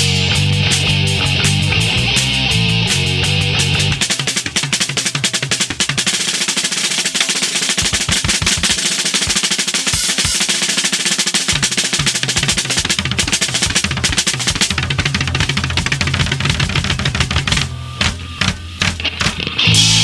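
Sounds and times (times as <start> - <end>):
bass drum kicks: 0.0 - 4.1, 7.8 - 9.4, 11.6 - 20.0
snare rolls and fills: 4.0 - 19.6
cymbals crashing: 19.6 - 20.0.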